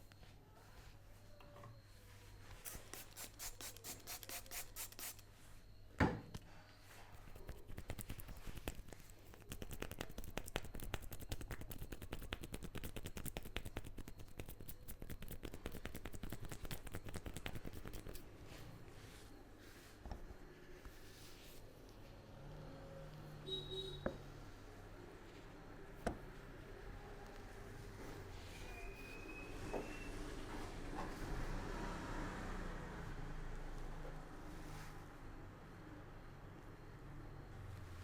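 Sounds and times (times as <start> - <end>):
hands scratching hair and scalp: 7.2 - 18.2.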